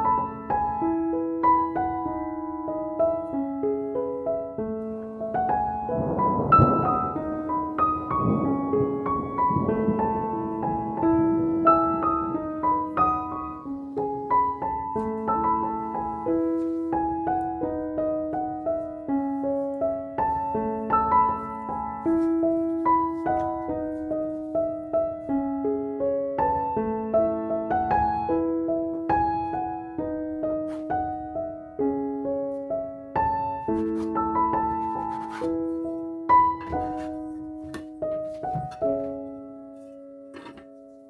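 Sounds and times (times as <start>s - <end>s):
gentle piano melody: 0.0s - 41.0s.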